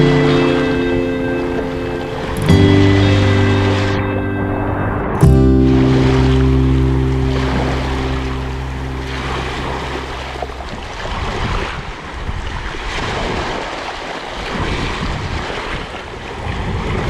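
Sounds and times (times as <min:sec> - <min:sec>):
held music chord: 0:00.0 - 0:10.6
sea waves surging: 0:00.0 - 0:10.8.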